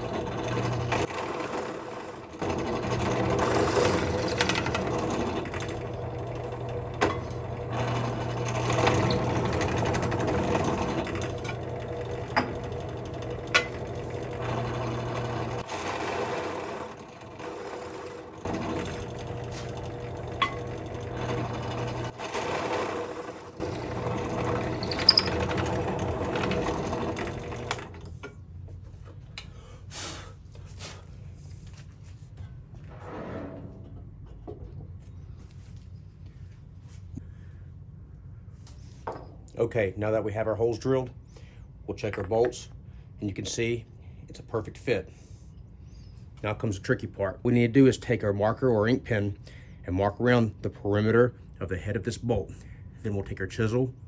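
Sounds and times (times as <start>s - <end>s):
drill press boring holes: 0.0s - 28.3s.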